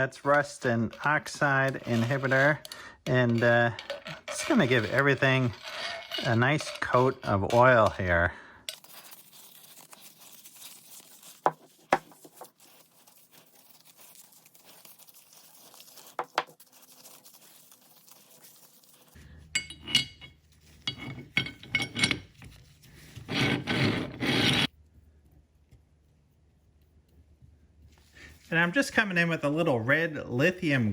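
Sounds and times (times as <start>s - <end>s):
scratchy rubbing: 0.0s - 19.2s, 20.4s - 24.8s.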